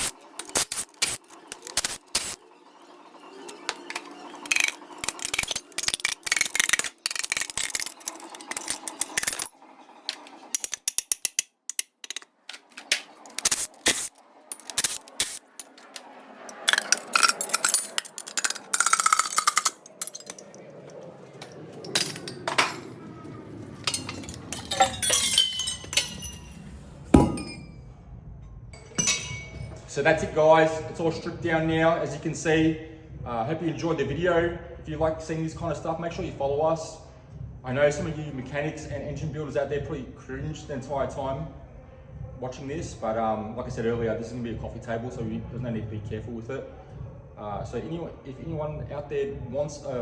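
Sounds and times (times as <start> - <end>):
metal engine parts and tools clattering: 0.0 - 2.4, 3.4 - 23.0, 23.6 - 27.8, 28.8 - 29.9.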